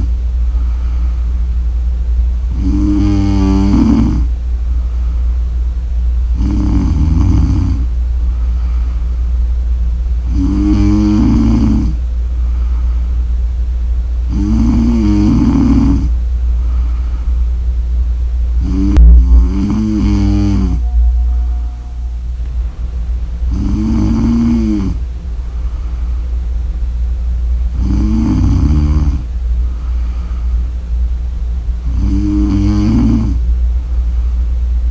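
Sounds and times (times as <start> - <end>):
steady low hum: 0.0 - 34.9
woman snoring: 2.5 - 4.3, 6.4 - 7.9, 10.3 - 12.0, 14.3 - 16.1, 18.6 - 20.8, 23.5 - 25.0, 27.8 - 29.3, 31.9 - 33.4
low thump: 19.0 - 22.7.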